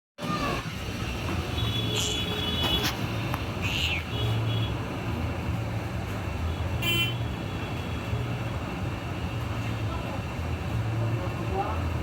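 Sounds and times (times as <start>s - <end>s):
street traffic rumble: 0.2s - 12.0s
vehicle horn toot: 6.8s - 7.2s.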